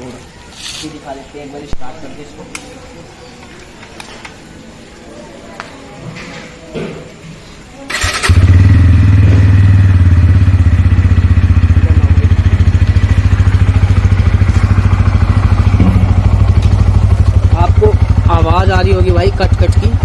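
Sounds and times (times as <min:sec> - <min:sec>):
motorcycle engine idling: 0:07.9 - 0:20.0.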